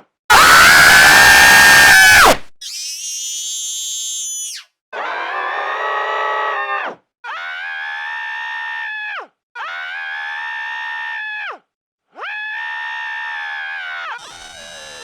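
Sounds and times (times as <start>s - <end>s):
pitched-down cartoon scream: 0.3s - 7.9s, 12.2s - 15.0s.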